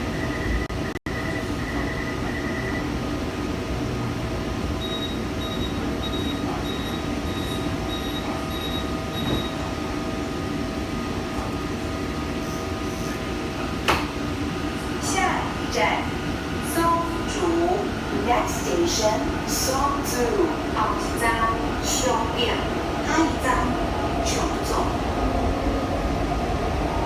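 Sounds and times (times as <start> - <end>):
train running hum and rumble: 0.0 - 27.0
door-closing warning beeps: 4.8 - 9.8.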